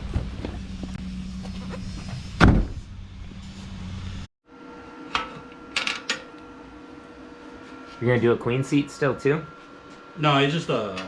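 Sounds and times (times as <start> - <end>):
car engine and road hum: 0.0 - 4.3
loud thump: 2.4 - 2.9.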